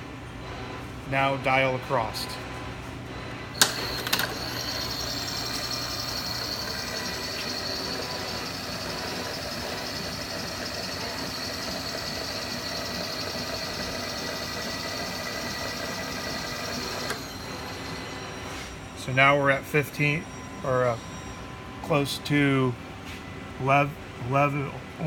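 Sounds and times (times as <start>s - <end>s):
milling machine whining: 3.6s - 19.2s.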